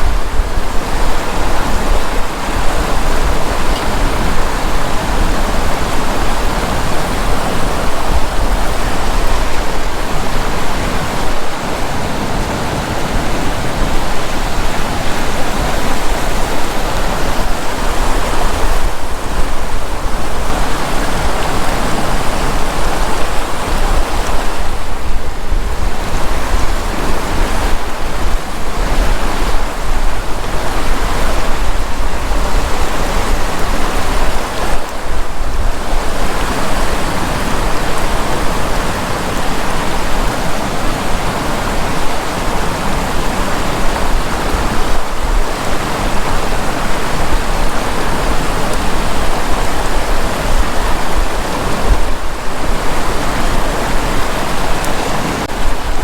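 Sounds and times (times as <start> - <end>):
river water rushing: 0.0 - 56.0.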